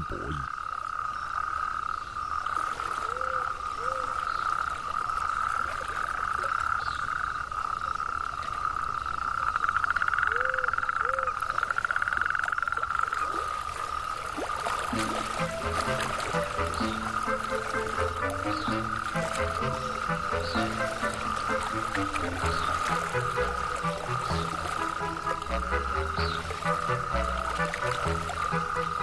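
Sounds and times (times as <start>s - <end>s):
frogs and toads trilling chorus: 0.0s - 29.0s
short low arching frog calls: 0.0s - 29.0s
fast-pulsing frog trill: 15.2s - 29.0s.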